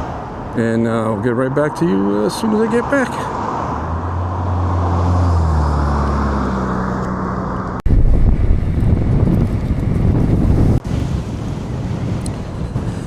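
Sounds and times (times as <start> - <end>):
gusty wind buffeting microphone: 0.0 - 13.0.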